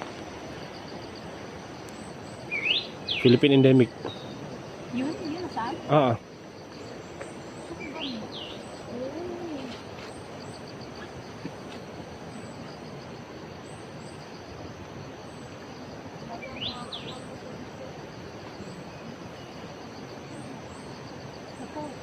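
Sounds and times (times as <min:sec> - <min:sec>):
forest background hiss: 0:00.0 - 0:22.0
bird whistling rising notes: 0:02.5 - 0:03.4.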